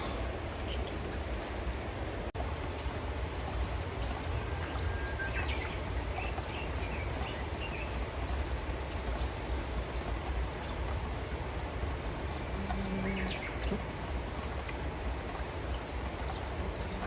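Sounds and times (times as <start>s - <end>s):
running water rushing: 0.0s - 17.0s
bird whistling and chirping: 4.6s - 5.8s.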